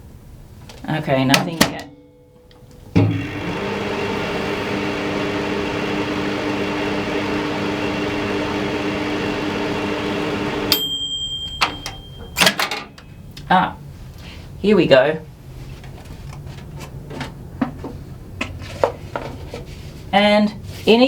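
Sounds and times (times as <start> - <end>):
microwave humming: 1.7 - 13.3
high beep: 10.7 - 12.5.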